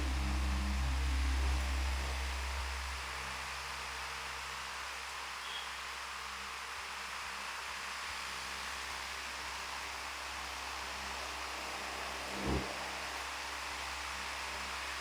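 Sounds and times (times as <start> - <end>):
fan running: 0.0 - 5.4.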